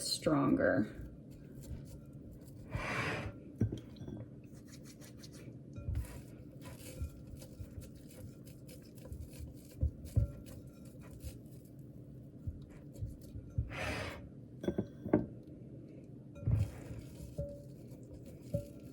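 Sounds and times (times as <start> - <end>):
hands kneading wet dough: 0.0 - 13.8, 16.4 - 18.9
low steady hum: 0.0 - 18.9
dull dough thumps: 5.9 - 11.5.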